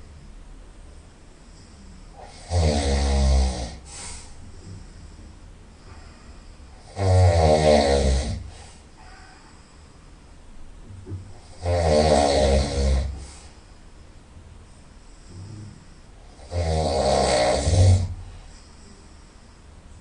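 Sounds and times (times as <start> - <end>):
person snoring through the nose: 1.6 - 5.3, 5.9 - 8.8, 11.4 - 13.6, 15.2 - 18.8
soft breath: 3.8 - 6.8, 8.4 - 11.4, 13.0 - 16.4, 18.0 - 20.0.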